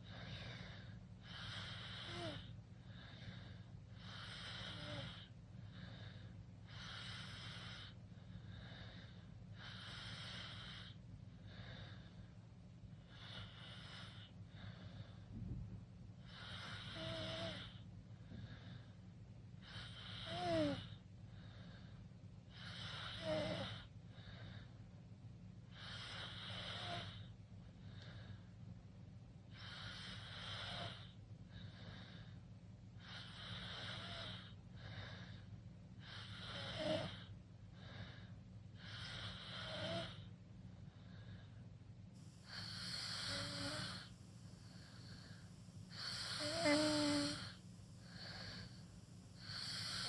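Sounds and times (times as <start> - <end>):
steady low hum: 0.0 - 50.0
person snoring: 42.4 - 44.1, 44.7 - 48.8, 49.4 - 50.0
squeaky whistle in snores: 42.5 - 44.1, 46.0 - 47.6.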